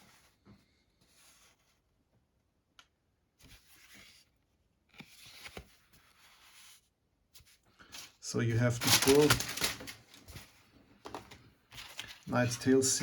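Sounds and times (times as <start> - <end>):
plastic packs rustling: 8.3 - 13.0.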